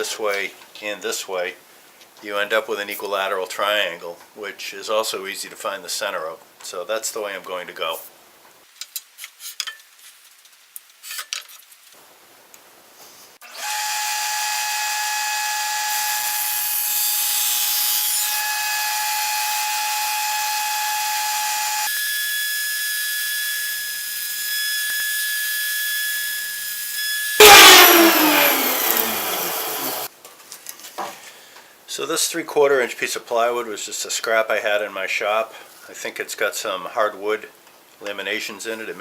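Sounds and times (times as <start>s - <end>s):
saw blade cutting plywood: 13.4s - 25.5s, 26.1s - 30.1s
table saw whining: 13.4s - 30.1s.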